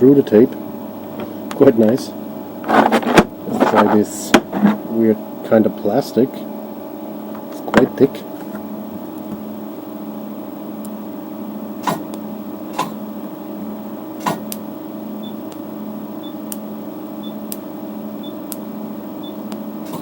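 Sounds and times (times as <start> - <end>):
laser unit humming: 0.0 - 20.0
sharp snaps of laser pulses: 11.8 - 12.1.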